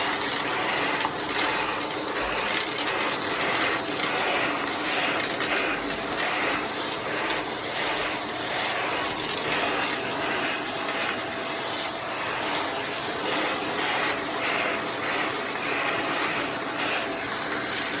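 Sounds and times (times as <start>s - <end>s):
vacuum cleaner suction: 0.0s - 18.0s.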